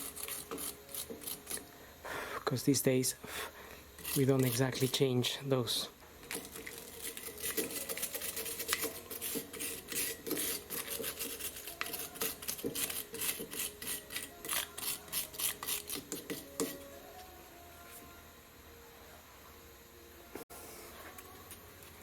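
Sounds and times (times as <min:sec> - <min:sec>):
tool scraping metal: 0:00.0 - 0:01.7, 0:04.0 - 0:05.1, 0:06.3 - 0:16.9.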